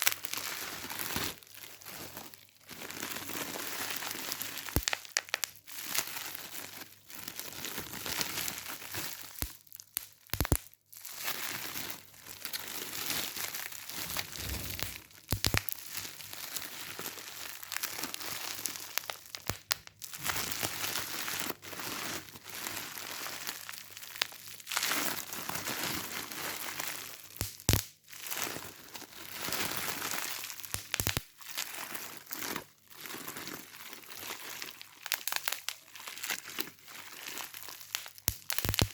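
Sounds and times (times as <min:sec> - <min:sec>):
crinkling and crackling: 0:00.0 - 0:27.8, 0:29.6 - 0:38.9.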